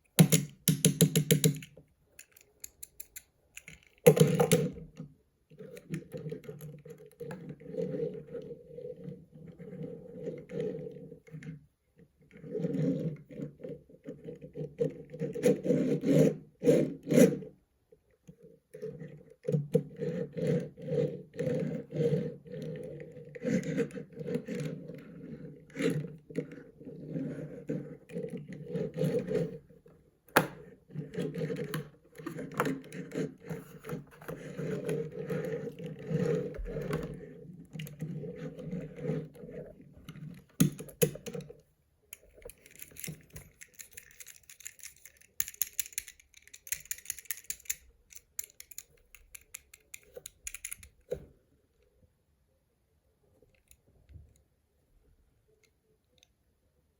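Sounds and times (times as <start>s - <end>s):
objects scraping and rustling: 22.6s - 47.4s.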